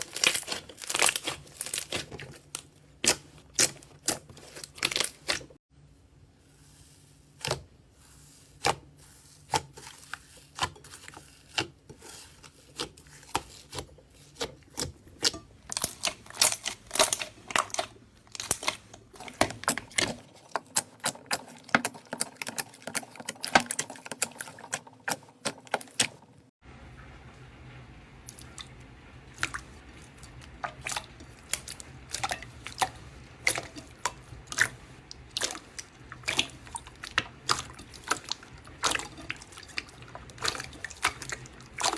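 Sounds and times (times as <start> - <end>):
slime popping and crackling: 0.0 - 5.4, 15.7 - 18.9.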